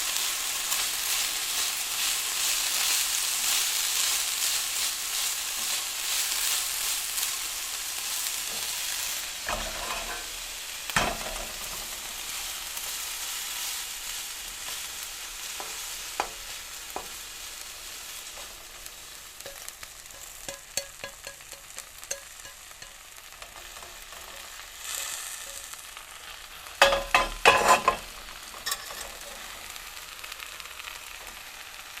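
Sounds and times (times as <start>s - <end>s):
vegetables sizzling in a pan: 0.0s - 32.0s
stirring knocks and scrapes: 26.8s - 28.0s.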